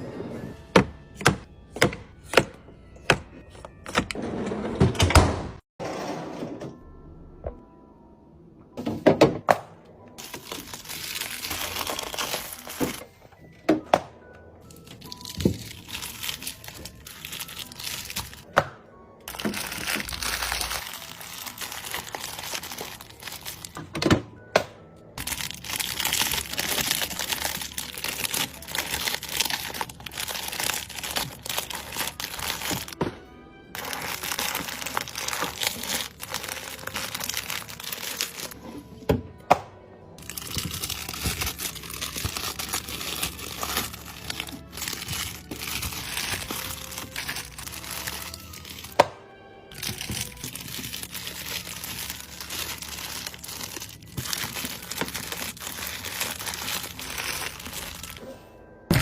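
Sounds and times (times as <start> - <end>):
plastic wrappers crinkling: 10.2 - 13.0, 14.7 - 18.5, 19.3 - 23.8, 25.2 - 33.0, 33.8 - 38.6, 40.2 - 49.0, 49.7 - 58.2.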